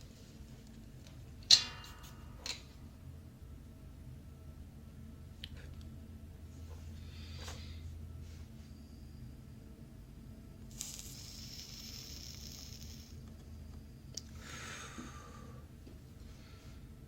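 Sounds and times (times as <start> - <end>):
flux sizzling under soldering iron: 10.7 - 13.2.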